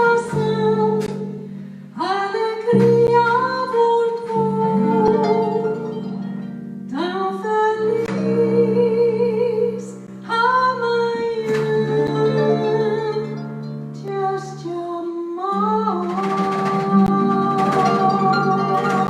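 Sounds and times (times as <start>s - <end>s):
woman singing with vibrato: 0.0s - 6.3s, 6.9s - 19.0s
plucked harp: 2.6s - 19.0s
low plucked-string chords: 15.8s - 19.0s.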